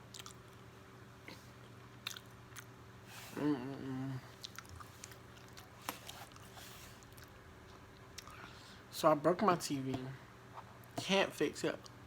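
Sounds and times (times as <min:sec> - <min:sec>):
chewing food: 0:00.0 - 0:00.7, 0:01.3 - 0:02.8, 0:04.3 - 0:08.5
person humming briefly: 0:03.2 - 0:04.3.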